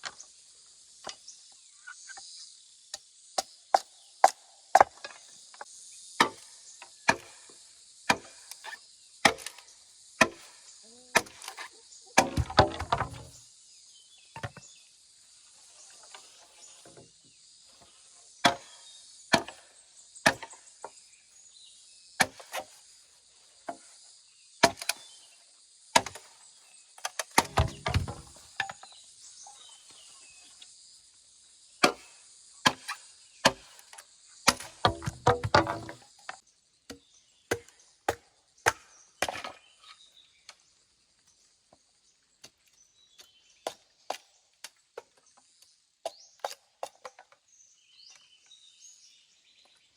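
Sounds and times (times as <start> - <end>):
high insect drone: 0.0 - 36.8
hand tool chopping strikes: 9.3 - 9.6, 12.2 - 13.4, 27.3 - 28.4, 34.5 - 36.0, 36.9 - 39.5.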